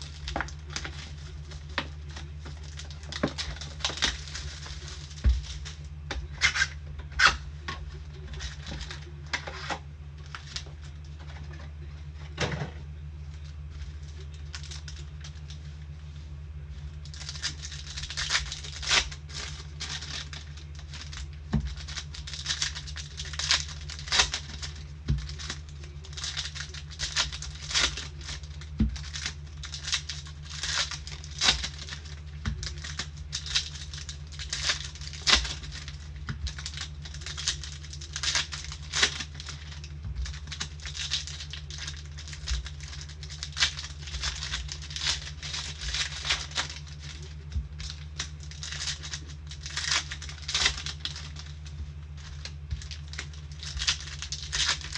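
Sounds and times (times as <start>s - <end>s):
card wrapper crinkling and tearing: 0.0s - 11.2s, 13.2s - 16.0s, 16.7s - 54.9s
steady low hum: 0.0s - 54.9s
cardboard and cards clicking: 17.0s - 54.9s.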